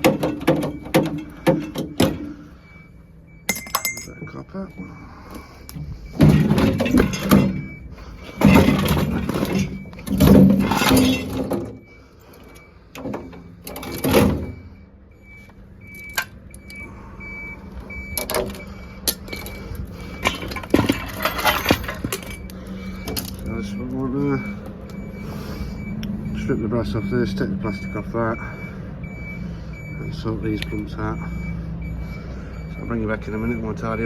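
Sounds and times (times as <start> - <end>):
metal clanks: 0.0 - 2.4, 3.5 - 4.3, 6.1 - 14.6, 18.0 - 23.5
metal parts scraping and rattling: 6.1 - 14.6, 18.0 - 23.5.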